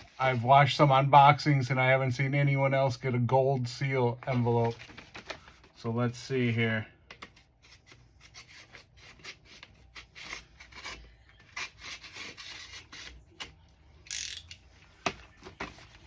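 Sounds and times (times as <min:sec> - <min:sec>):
paper envelope rustling: 0:04.2 - 0:05.8.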